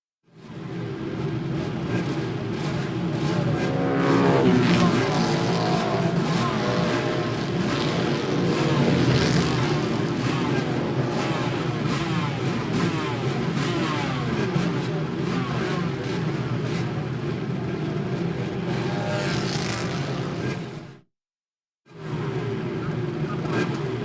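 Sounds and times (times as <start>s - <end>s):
motorcycle engine revving: 0.6s - 21.0s.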